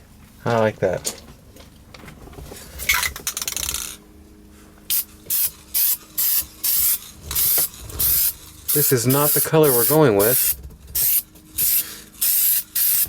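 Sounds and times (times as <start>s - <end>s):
spray paint can hissing: 4.9s - 13.0s.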